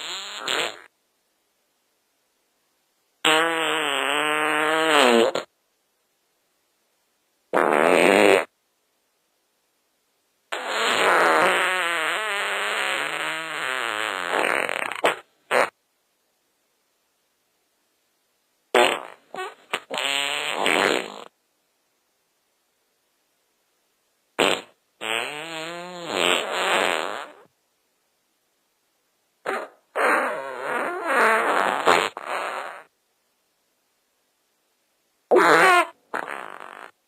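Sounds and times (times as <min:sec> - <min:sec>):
fart sounds: 0:00.0 - 0:00.9, 0:03.2 - 0:05.5, 0:07.5 - 0:08.5, 0:10.5 - 0:15.8, 0:18.7 - 0:21.3, 0:24.4 - 0:27.5, 0:29.4 - 0:32.9, 0:35.3 - 0:37.0.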